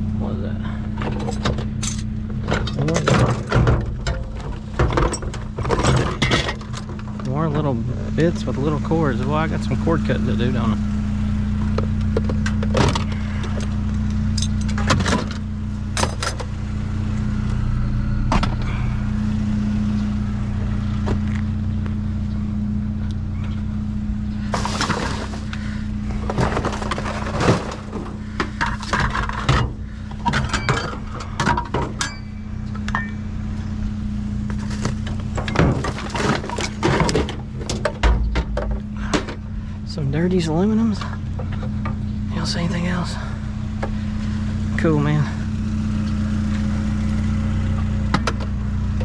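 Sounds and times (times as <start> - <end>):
low engine hum: 0.0 - 49.0
scrap metal clinking and knocking: 1.0 - 7.7, 26.2 - 33.3.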